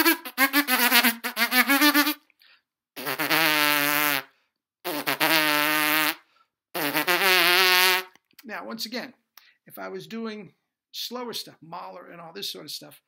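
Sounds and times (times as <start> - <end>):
raspy lip buzz notes: 0.0 - 2.2, 3.0 - 4.3, 4.9 - 6.2, 6.8 - 8.2.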